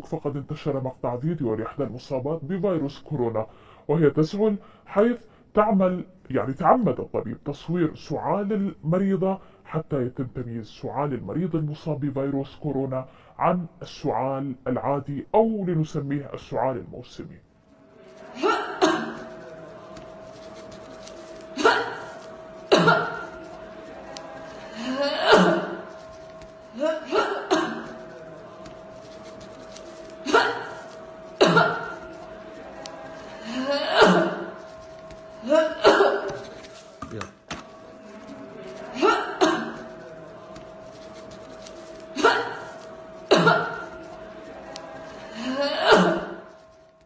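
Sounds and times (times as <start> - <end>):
faint steady hum: 0.0 - 47.0
woman coughing: 18.4 - 19.4, 21.6 - 23.4, 24.8 - 25.9, 26.7 - 28.0, 30.2 - 30.8, 31.4 - 32.1, 33.5 - 34.5, 35.4 - 36.4, 38.9 - 39.9, 42.2 - 44.0, 45.4 - 46.4.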